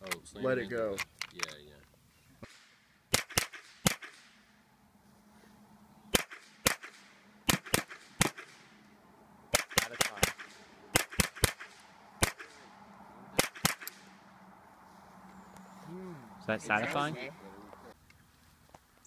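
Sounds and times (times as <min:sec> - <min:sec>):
gunshots with echo: 0:06.1 - 0:08.7, 0:09.5 - 0:12.7, 0:13.4 - 0:14.1.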